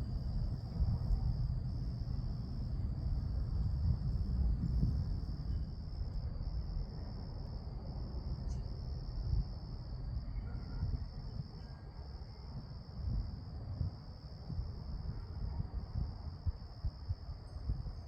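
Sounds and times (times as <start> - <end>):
low rumbling noise: 0.0 - 10.3.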